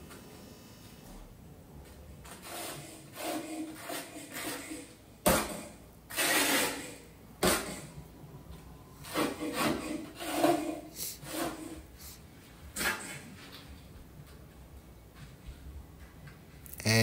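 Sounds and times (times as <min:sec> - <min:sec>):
membrane scraping on mortar: 0:02.2 - 0:04.9, 0:06.1 - 0:07.1, 0:09.0 - 0:11.9.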